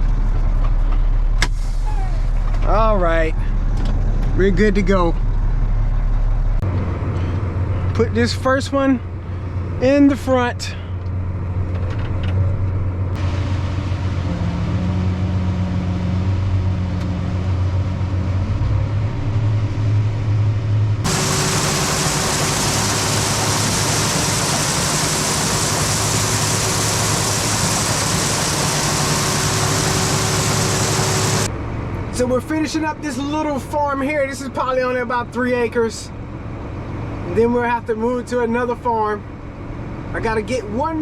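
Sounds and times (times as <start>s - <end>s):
machinery rushing and humming: 21.0s - 31.5s
heavy engine idling: 21.0s - 32.1s.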